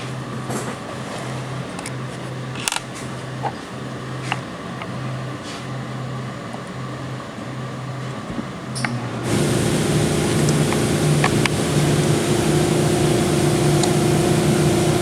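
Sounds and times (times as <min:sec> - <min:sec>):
low hum cutting in and out: 0:09.3 - 0:15.0.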